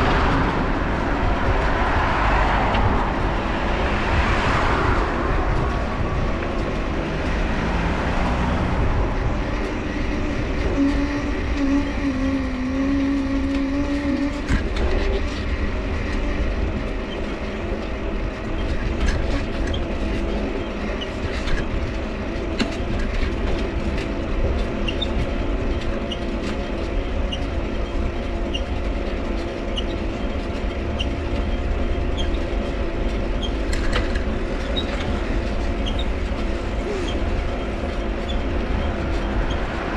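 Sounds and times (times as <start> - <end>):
bicycle dynamo humming: 0.0 - 39.9
bicycle tyres rumbling: 0.0 - 39.9
bicycle crank squeaking: 34.5 - 39.9.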